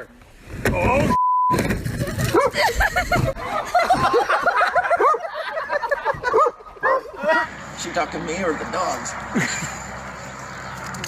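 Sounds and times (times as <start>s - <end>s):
short beep tone: 1.1s - 1.6s.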